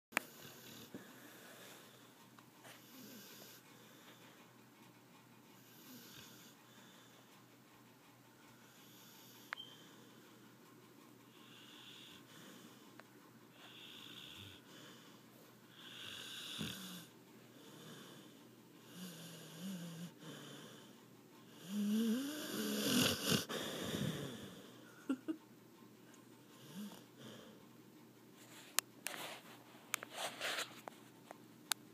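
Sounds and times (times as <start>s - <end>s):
dog snoring: 0.2s - 2.0s, 2.6s - 4.4s, 5.6s - 7.2s, 8.6s - 10.2s, 11.3s - 12.9s, 13.5s - 25.0s, 26.4s - 27.6s.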